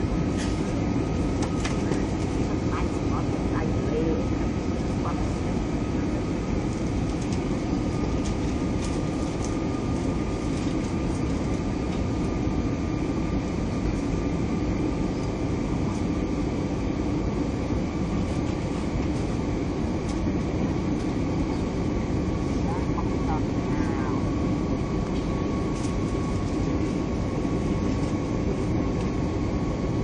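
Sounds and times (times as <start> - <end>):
airliner cabin rumble: 0.0 - 30.0
faint steady whine: 0.0 - 30.0.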